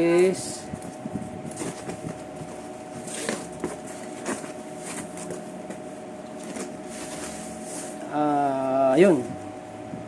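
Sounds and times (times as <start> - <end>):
faint steady hum: 0.0 - 10.0.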